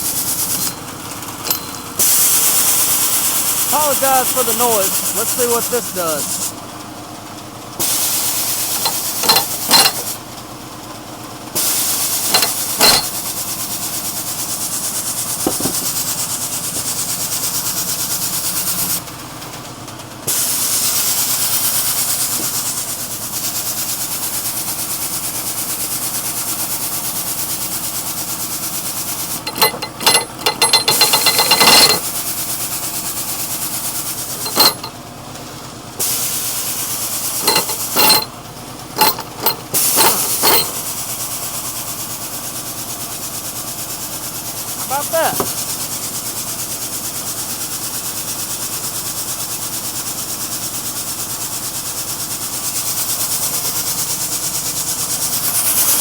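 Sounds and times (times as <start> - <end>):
air impact wrench hammering: 1.4 - 2.4, 8.7 - 10.2, 12.2 - 13.2, 15.5 - 16.0, 29.5 - 32.1, 34.4 - 34.9, 37.4 - 38.3, 39.0 - 40.8.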